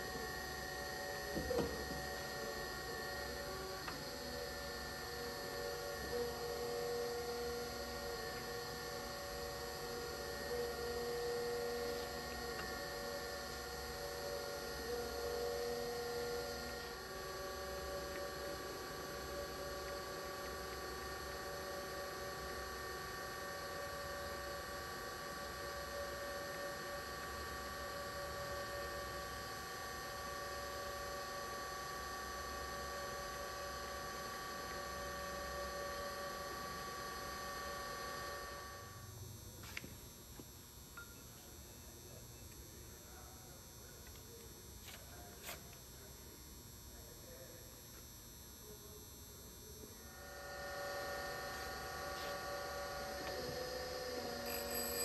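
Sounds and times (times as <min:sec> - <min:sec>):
surface grinder motor hum: 0:00.0 - 0:23.5, 0:50.0 - 0:55.0.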